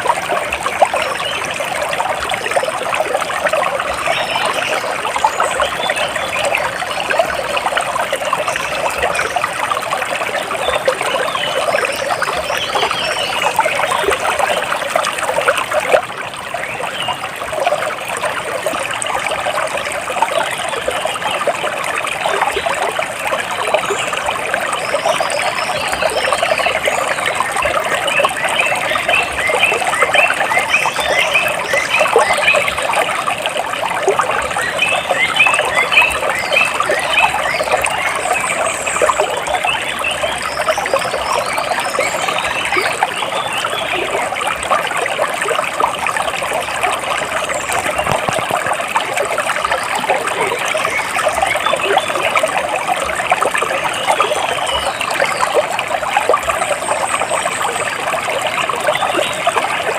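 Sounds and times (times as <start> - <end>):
water splashing and trickling: 0.0 - 59.9.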